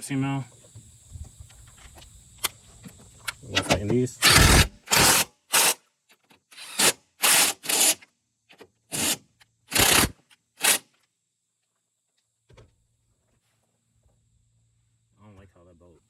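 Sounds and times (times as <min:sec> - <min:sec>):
ratchet turning bolt: 0:03.2 - 0:05.8, 0:06.6 - 0:08.0, 0:08.9 - 0:10.8.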